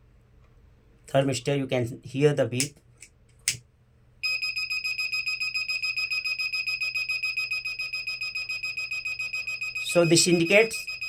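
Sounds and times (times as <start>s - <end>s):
rapidly pulsing alarm beep: 4.2s - 11.0s.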